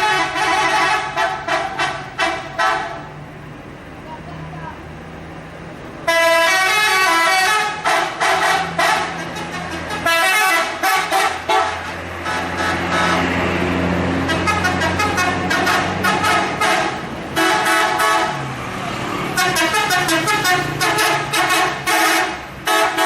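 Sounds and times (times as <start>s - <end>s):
multi-tone musical bus horn: 0.0s - 3.1s, 6.0s - 18.5s, 19.2s - 23.0s
low engine hum: 0.0s - 23.0s.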